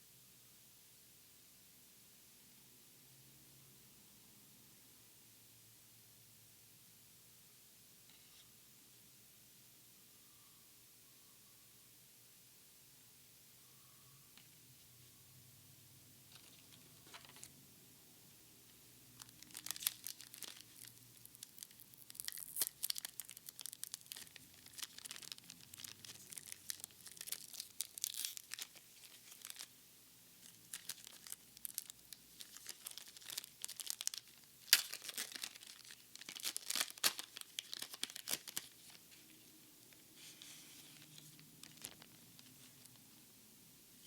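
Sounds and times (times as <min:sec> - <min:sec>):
foil wrappers tearing and crinkling: 0:19.2 - 0:29.7, 0:30.4 - 0:39.0, 0:41.0 - 0:43.0.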